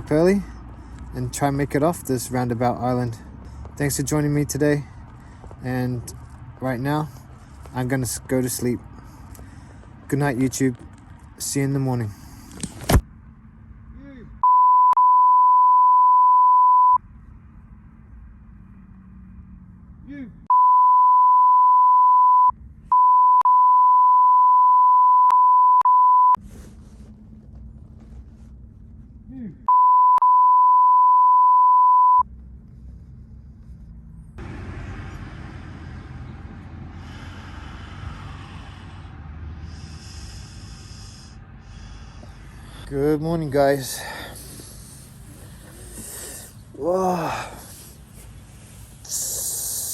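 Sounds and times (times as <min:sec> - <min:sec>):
road traffic rumble: 0:00.0 - 0:14.6, 0:15.7 - 0:20.6, 0:26.4 - 0:29.9, 0:31.5 - 0:49.9
steady electronic beep: 0:14.4 - 0:17.0, 0:20.5 - 0:26.4, 0:29.7 - 0:32.2.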